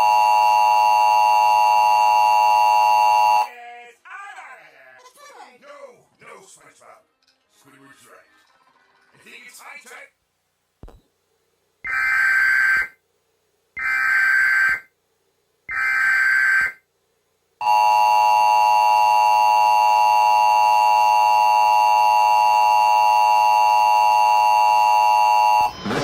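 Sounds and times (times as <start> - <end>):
two-tone attention signal: 17.6 - 26.0.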